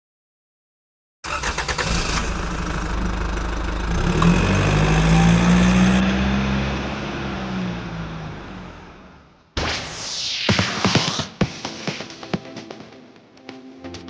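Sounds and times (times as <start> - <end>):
vehicle engine running: 2.2 - 9.1.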